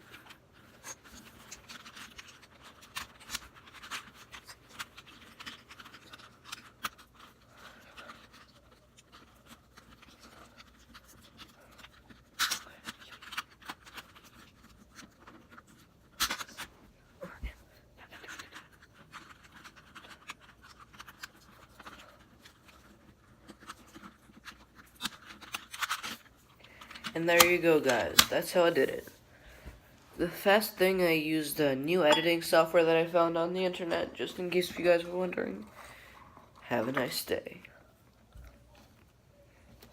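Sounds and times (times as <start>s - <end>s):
plastic cube pieces clicking: 0.2s - 7.4s
cube pieces snapping together: 11.3s - 16.7s.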